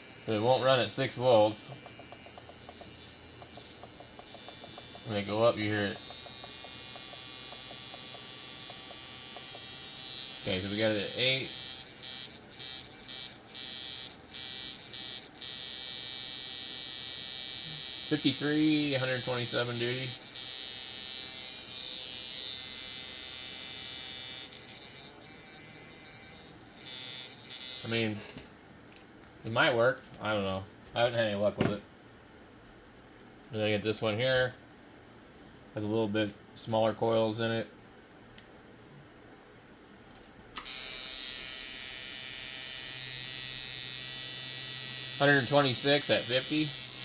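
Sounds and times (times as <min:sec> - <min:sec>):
tattoo machine buzzing: 0:00.0 - 0:28.1, 0:40.6 - 0:47.0
tattoo machine switch click: 0:01.1 - 0:18.1, 0:40.6 - 0:47.0.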